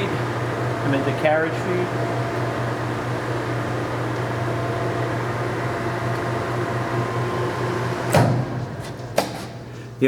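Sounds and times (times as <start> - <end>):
lathe machine hum: 0.0 - 10.0
sharp machine clunk: 8.0 - 9.6.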